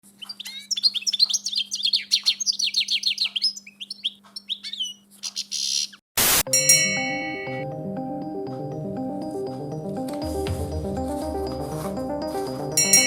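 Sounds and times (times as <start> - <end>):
songbirds chirping: 0.0 - 6.0.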